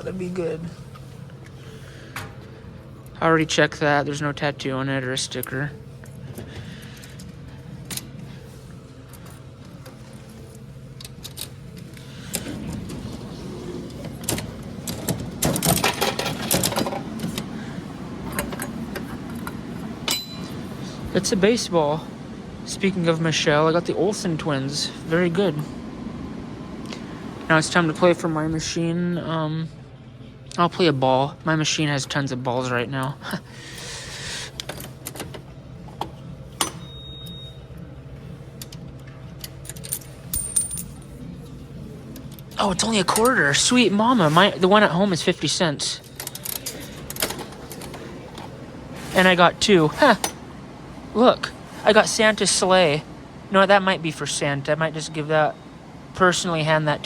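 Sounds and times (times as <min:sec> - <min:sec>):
low machine hum: 0:00.0 - 0:57.0
vending machine mechanism clicking: 0:11.0 - 0:20.7, 0:33.7 - 0:37.5, 0:44.7 - 0:50.5
vending machine clicks and knocks: 0:14.1 - 0:17.5.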